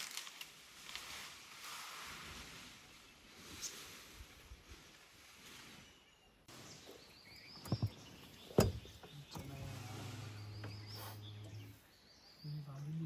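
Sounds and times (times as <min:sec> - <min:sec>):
faint bird chirps: 0:05.4 - 0:13.0
vehicle engine humming: 0:07.6 - 0:12.0.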